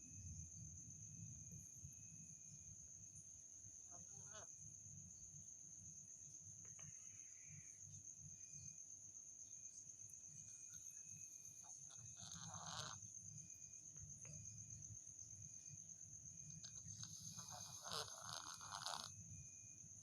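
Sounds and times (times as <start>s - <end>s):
cat snoring: 11.9s - 13.0s, 16.9s - 19.2s.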